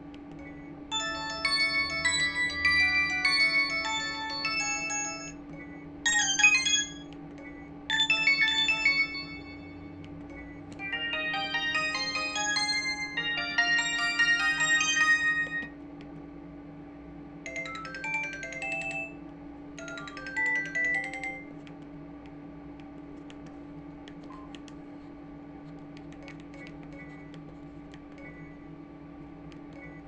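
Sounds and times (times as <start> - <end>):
steady low hum: 0.0 - 30.0
phone ringtone melody: 0.9 - 5.4, 6.1 - 7.1, 7.9 - 10.0, 10.8 - 15.7, 17.5 - 19.2, 19.8 - 21.6.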